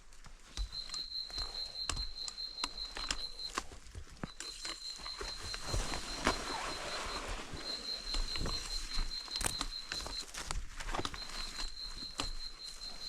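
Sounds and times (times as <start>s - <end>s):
insect trilling: 0.6s - 13.0s
footsteps crunching on trail: 3.1s - 13.0s.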